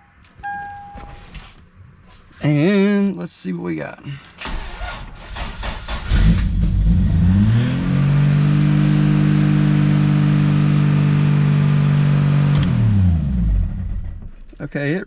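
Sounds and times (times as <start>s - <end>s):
car engine starting and revving: 4.4s - 14.3s.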